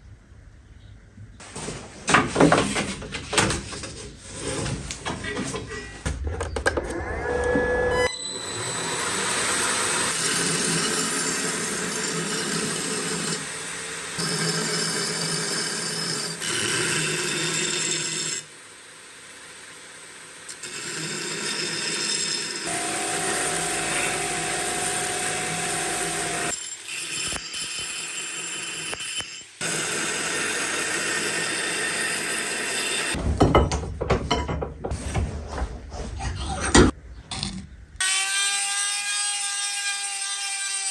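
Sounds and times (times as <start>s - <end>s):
power tool grinding steel: 6.9s - 33.2s.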